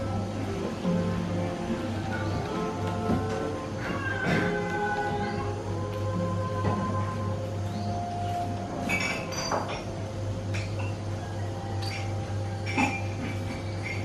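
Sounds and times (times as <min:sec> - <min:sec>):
tableware clinking: 0:08.7 - 0:11.1, 0:11.7 - 0:14.0.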